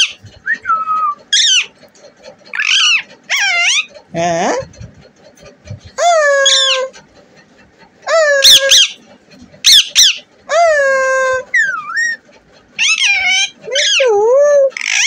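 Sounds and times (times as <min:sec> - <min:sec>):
parrot squawking: 0:00.0 - 0:01.8, 0:02.5 - 0:05.0, 0:05.7 - 0:07.0, 0:08.0 - 0:09.0, 0:09.6 - 0:15.0.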